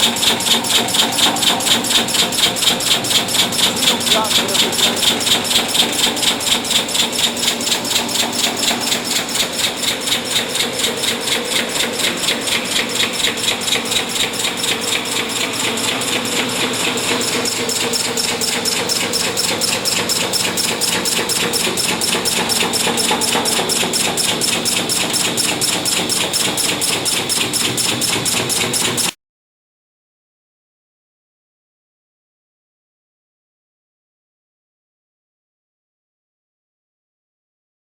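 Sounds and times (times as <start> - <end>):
spot welding machine pulses: 0.0 - 29.2.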